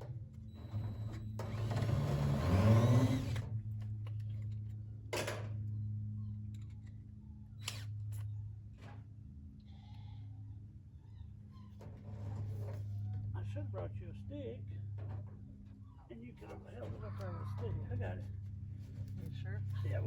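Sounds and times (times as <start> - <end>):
steady low hum: 0.0 - 20.0
power drill driving screw: 0.6 - 3.5.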